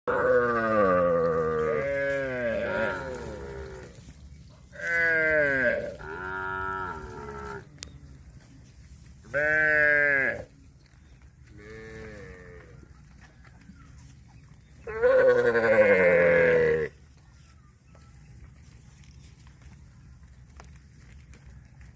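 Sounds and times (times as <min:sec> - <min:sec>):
cattle mooing: 0:00.1 - 0:04.0, 0:04.8 - 0:07.8, 0:14.9 - 0:16.9.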